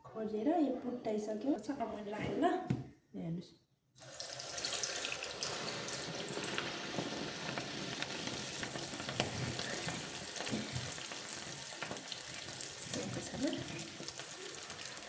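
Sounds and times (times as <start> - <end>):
batter sizzling in hot oil: 4.0 - 15.0
crackling pops: 6.4 - 14.2.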